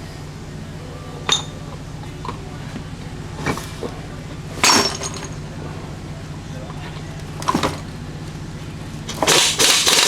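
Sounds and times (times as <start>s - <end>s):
steady low hum: 0.0s - 10.0s
metal tools clinking: 1.3s - 1.6s, 4.6s - 5.4s.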